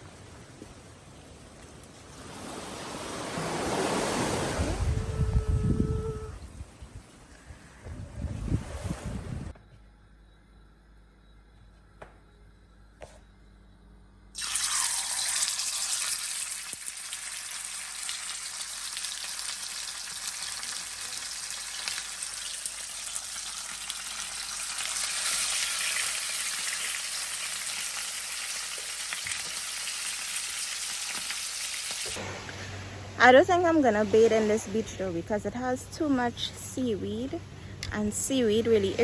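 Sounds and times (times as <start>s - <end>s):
surf washing onto beach: 2.1s - 5.2s.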